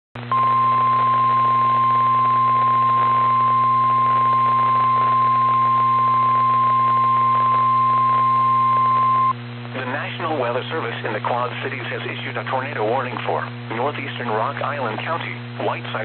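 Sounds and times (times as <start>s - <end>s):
radio hum and hiss: 0.2s - 16.0s
steady high-pitched alarm beep: 0.3s - 9.4s.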